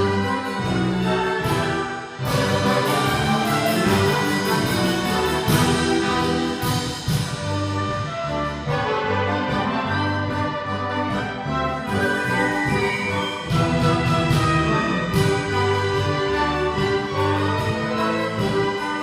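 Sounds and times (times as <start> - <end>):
orchestra with brass: 0.0 - 19.0.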